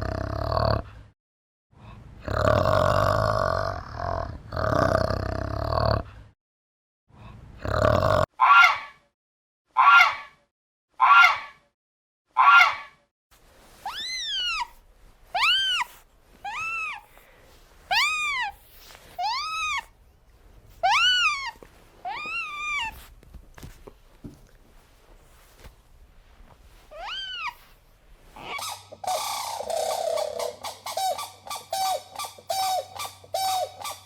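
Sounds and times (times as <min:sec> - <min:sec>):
animal grunting calls: 0:26.9 - 0:34.0.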